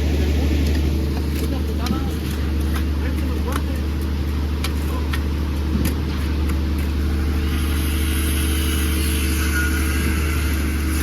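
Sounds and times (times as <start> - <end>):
heavy diesel engine running: 0.0 - 11.0
hiss: 7.4 - 11.0.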